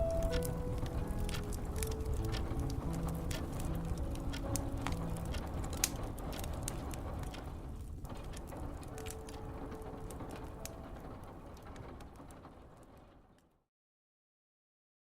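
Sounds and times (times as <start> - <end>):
instrumental music held notes: 0.0 - 6.5
wood fire crackling: 0.0 - 13.5.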